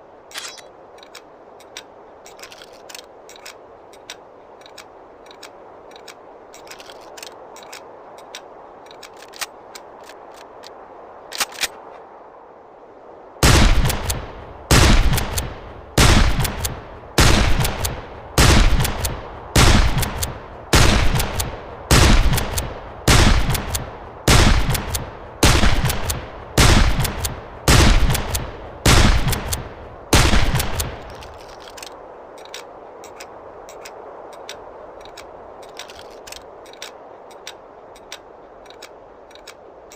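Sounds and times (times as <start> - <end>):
faint clicks: 0.3 - 12.1, 30.6 - 39.9
rifle shots: 13.4 - 31.2.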